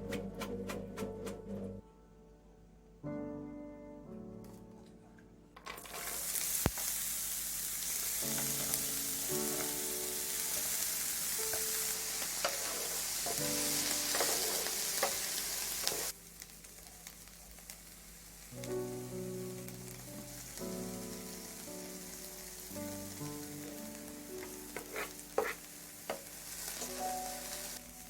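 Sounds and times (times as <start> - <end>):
food sizzling on a hot plate: 5.8 - 28.0.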